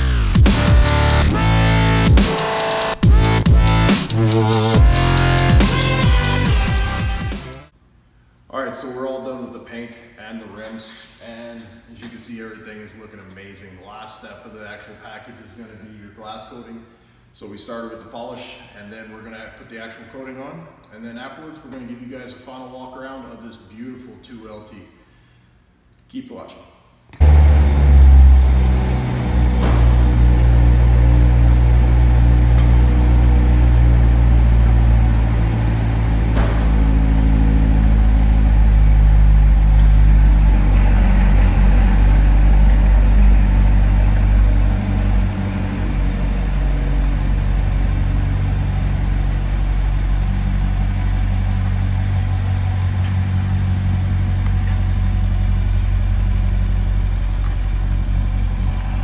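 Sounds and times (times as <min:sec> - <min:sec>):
car engine running: 0:00.0 - 0:07.7, 0:27.2 - 0:59.0.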